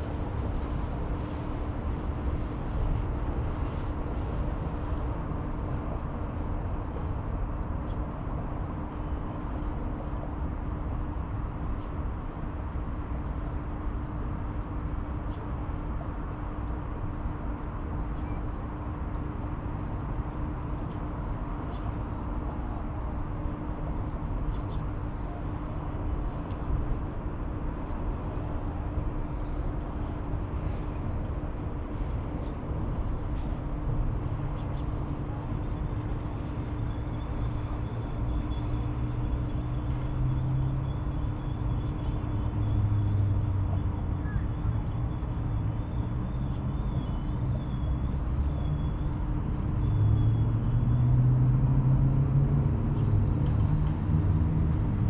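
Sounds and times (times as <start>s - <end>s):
constant low hum: 0.0s - 55.0s
distant city traffic rumbling: 13.4s - 55.0s.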